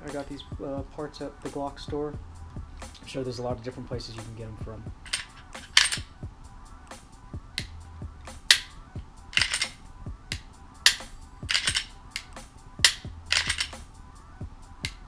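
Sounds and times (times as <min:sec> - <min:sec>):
background music: 0:00.0 - 0:15.0
snapping percussion hits: 0:02.8 - 0:03.1, 0:06.9 - 0:14.0, 0:14.7 - 0:15.0.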